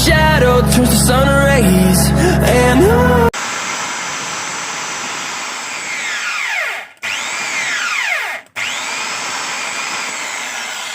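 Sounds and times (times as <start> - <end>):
electric hand drill whining: 3.4 - 10.9.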